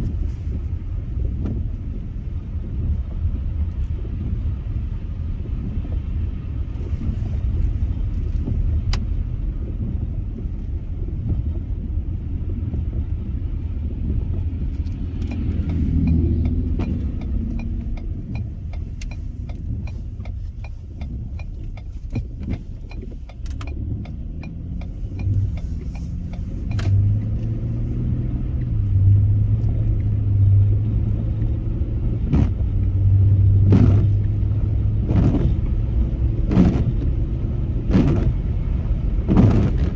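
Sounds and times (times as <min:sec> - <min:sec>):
tyre and engine rumble: 0:00.0 - 0:39.9
regular ticking: 0:14.8 - 0:27.8.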